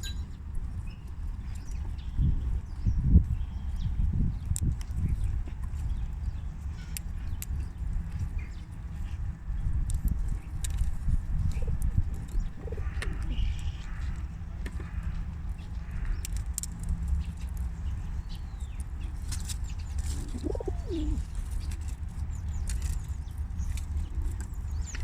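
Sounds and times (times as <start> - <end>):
steady low rumble: 0.0 - 25.0
squirrel rising and falling call: 20.2 - 21.2.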